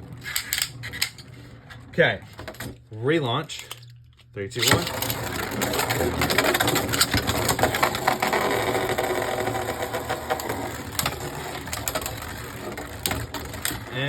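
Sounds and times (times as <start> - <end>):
spinning tops whirring: 4.6 - 14.0.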